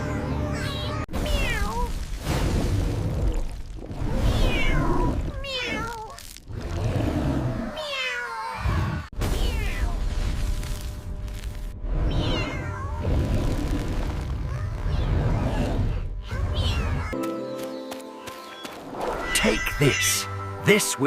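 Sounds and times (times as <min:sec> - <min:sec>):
cartoon cat meowing: 0:00.0 - 0:01.9, 0:04.2 - 0:06.2, 0:07.7 - 0:10.0, 0:12.1 - 0:13.0, 0:16.2 - 0:17.2, 0:19.2 - 0:20.3.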